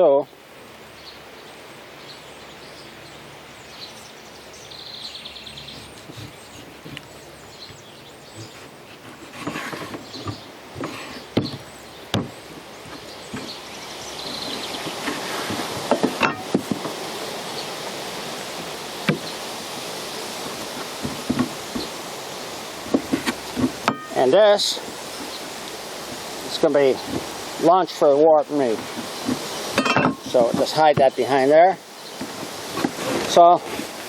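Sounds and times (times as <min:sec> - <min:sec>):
outdoor background noise: 0:00.0 - 0:34.0
bird chirps: 0:00.2 - 0:08.8, 0:10.0 - 0:15.1.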